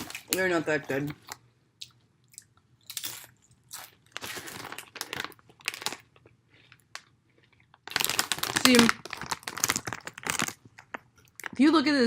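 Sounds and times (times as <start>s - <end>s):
person crunching tortilla chips: 2.3s - 11.6s.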